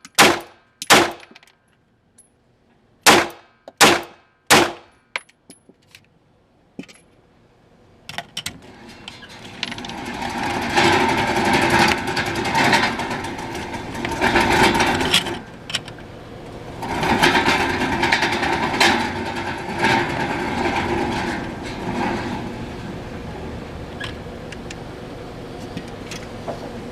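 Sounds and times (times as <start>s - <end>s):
machine humming and rattling: 6.8s - 26.9s.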